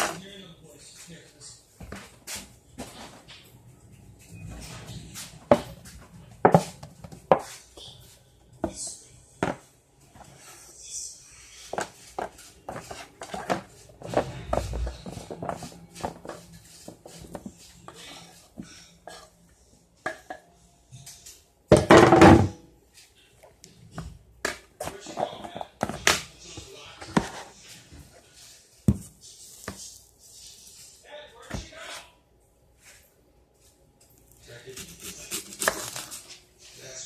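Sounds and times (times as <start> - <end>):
kitchen knocks and taps: 6.4 - 7.5, 9.4 - 9.6, 21.7 - 22.6.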